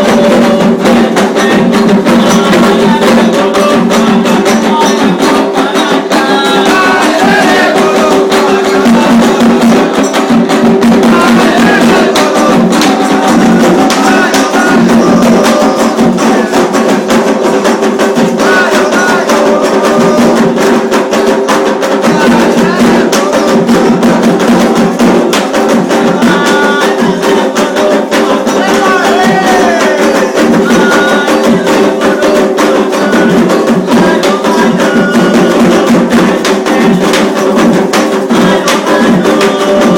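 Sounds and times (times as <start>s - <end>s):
hand drums: 0.0s - 39.9s
struck percussion timeline: 0.0s - 39.9s
voices singing and calling: 0.0s - 39.9s.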